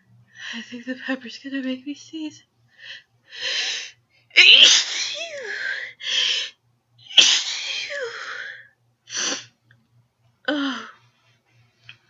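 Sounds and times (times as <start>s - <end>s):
person sneezing: 4.4s - 5.4s, 7.1s - 8.3s.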